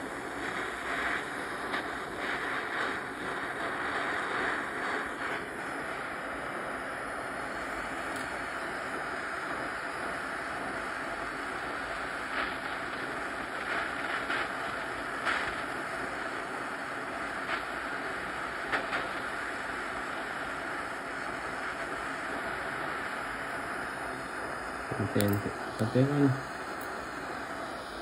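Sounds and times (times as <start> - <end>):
torch flame hissing: 0.0 - 28.0.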